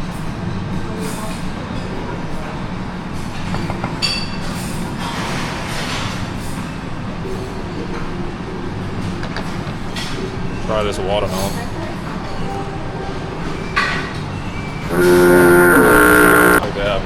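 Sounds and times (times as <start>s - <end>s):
low mechanical hum: 14.8s - 16.6s.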